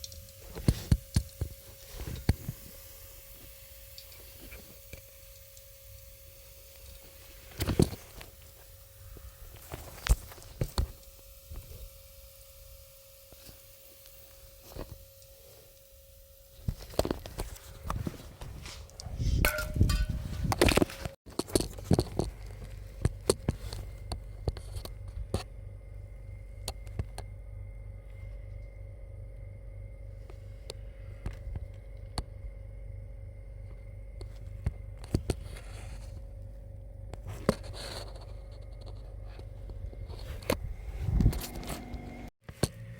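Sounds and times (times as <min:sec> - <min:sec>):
faint steady hum: 0:00.0 - 0:42.9
parts knocking and clattering: 0:19.4 - 0:23.6.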